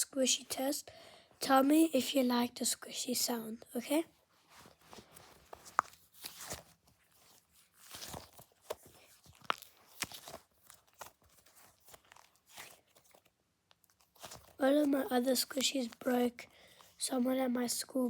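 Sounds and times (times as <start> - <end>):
squishy toy crackling and rustling: 3.9 - 17.1.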